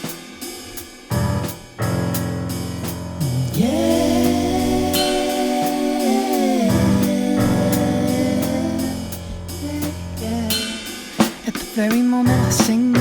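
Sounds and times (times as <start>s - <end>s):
bass and drums beat: 0.0s - 13.0s
long held sliding note: 3.6s - 10.0s.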